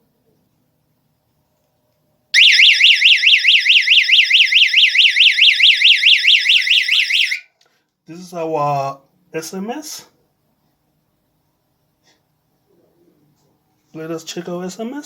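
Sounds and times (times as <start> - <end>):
electronic alarm siren warbling: 2.4 - 7.4.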